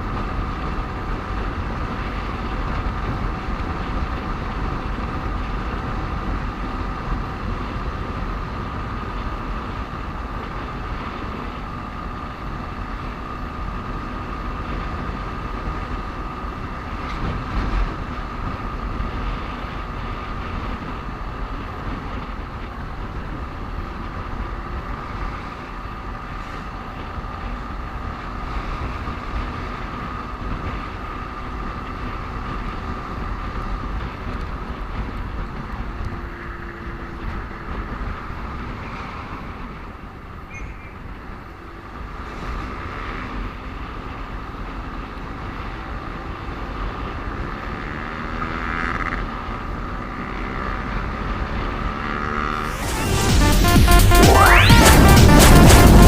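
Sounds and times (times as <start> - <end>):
rushing wind noise: 0.0 - 44.4
motorcycle engine running: 0.0 - 52.8
high whine: 52.6 - 56.0.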